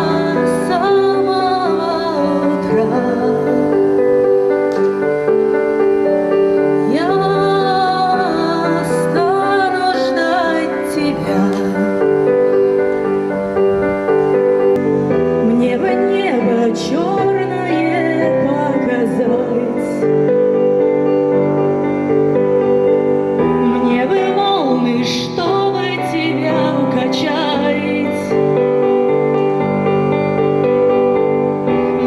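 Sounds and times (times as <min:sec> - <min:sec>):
woman singing: 0:00.0 - 0:05.0, 0:06.5 - 0:12.9, 0:15.0 - 0:20.4, 0:23.4 - 0:28.8
held instrumental accompaniment: 0:00.0 - 0:32.0.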